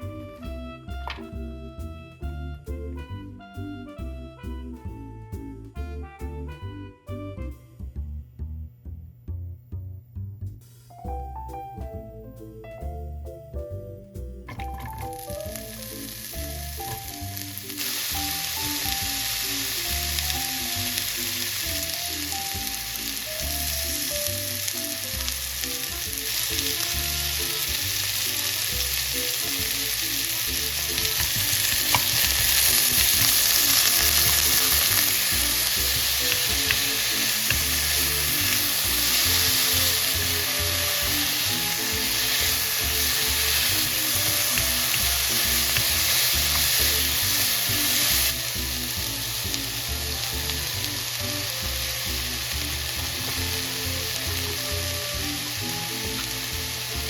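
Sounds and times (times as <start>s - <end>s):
light background music: 0.0s - 57.0s
potatoes sizzling in frying pan: 14.5s - 57.0s.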